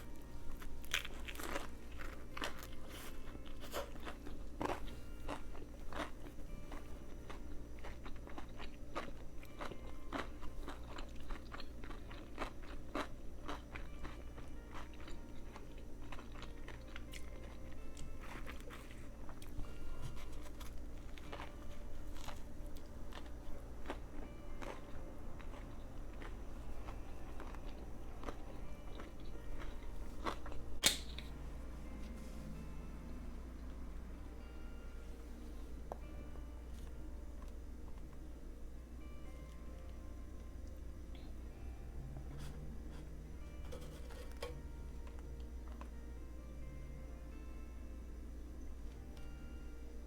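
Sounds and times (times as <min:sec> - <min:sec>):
chewing crunchy sandwich: 0:00.0 - 0:30.7
low steady hum: 0:00.0 - 0:50.0.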